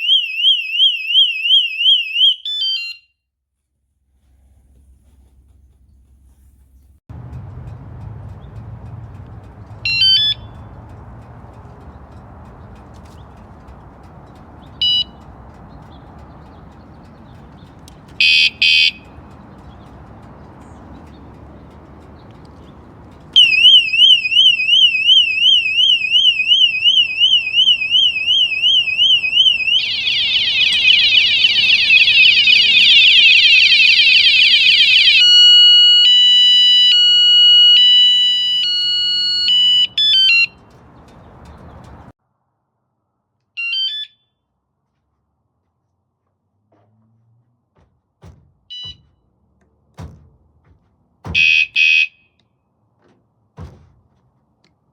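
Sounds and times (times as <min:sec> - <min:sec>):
alarm siren: 0:00.0 - 0:03.1, 0:07.1 - 0:42.0, 0:43.6 - 0:44.2, 0:48.7 - 0:49.0, 0:51.3 - 0:52.3
alarm chirps: 0:08.4 - 0:13.4, 0:14.6 - 0:40.6, 0:48.7 - 0:49.0, 0:51.3 - 0:52.3.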